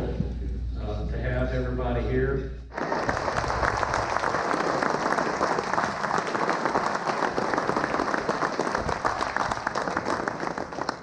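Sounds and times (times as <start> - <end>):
audience applauding: 2.7 - 11.0.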